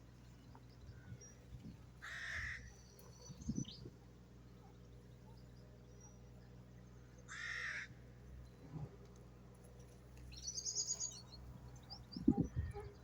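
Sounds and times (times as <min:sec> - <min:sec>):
harsh cawing bird call: 0:02.0 - 0:02.7, 0:07.3 - 0:07.9
small bird chirping: 0:10.3 - 0:13.0.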